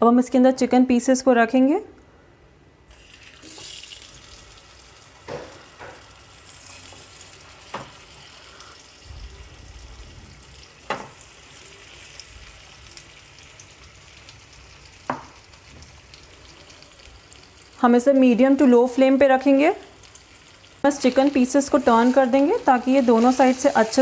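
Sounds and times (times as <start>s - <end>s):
chicken sizzling in hot oil: 2.9s - 18.4s, 19.4s - 24.0s
sharp knocks in pan: 5.2s - 6.1s, 10.8s - 11.2s, 15.1s - 15.4s.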